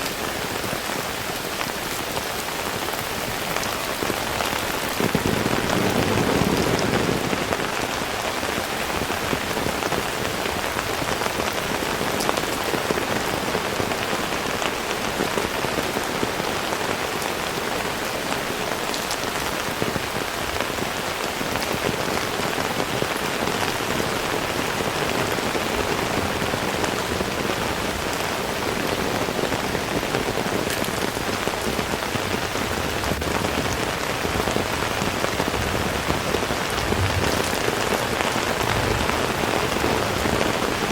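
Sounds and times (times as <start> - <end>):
raindrop impacts: 0.0 - 13.2, 26.0 - 40.9
heavy rain hissing: 0.0 - 40.9.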